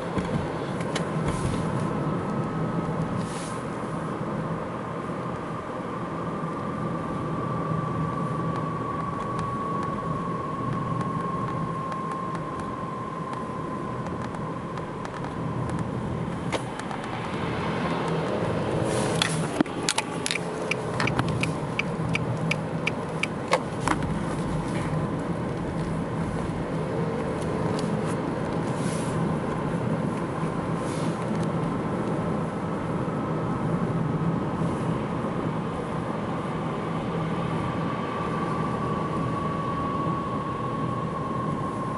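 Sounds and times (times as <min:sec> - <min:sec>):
car road noise: 0:00.0 - 0:41.9.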